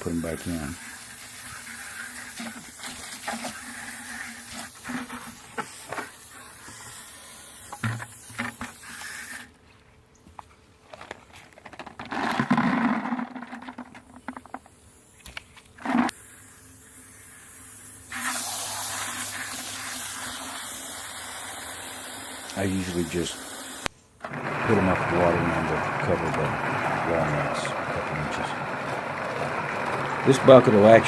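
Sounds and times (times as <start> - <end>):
garden hose water splashing: 0.0 - 9.5, 15.8 - 31.0
nuts knocking in bucket: 11.0 - 14.7.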